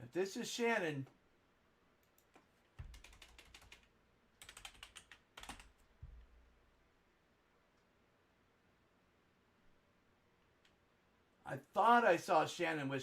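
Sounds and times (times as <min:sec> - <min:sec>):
keyboard typing: 0:02.0 - 0:06.2.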